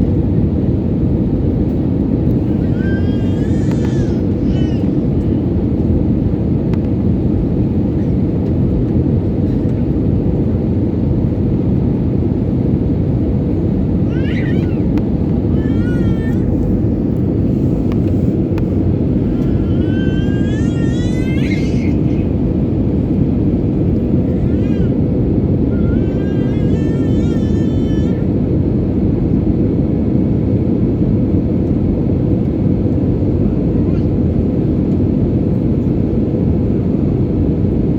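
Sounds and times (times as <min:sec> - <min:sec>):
airliner engine rumble: 0:00.0 - 0:37.9.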